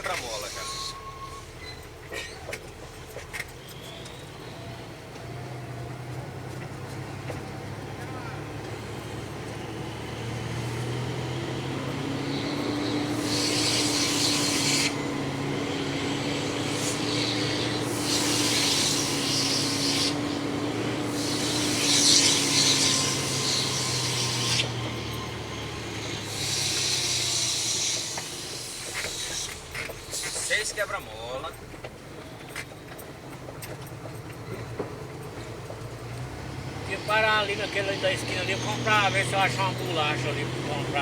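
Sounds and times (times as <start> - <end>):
air brakes hissing: 0.0 - 4.7, 12.2 - 33.0, 36.8 - 41.0
truck diesel engine running: 0.0 - 41.0.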